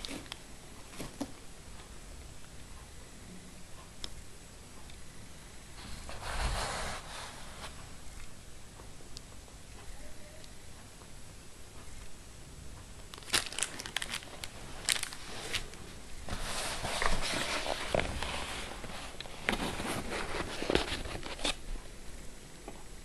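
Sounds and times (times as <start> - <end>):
packaging crinkling with clicks: 13.1 - 15.8.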